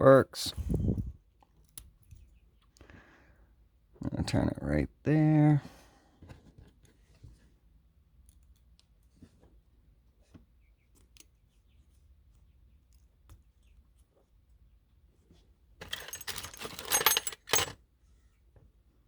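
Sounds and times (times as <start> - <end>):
metal lock parts rattling: 15.8 - 17.8.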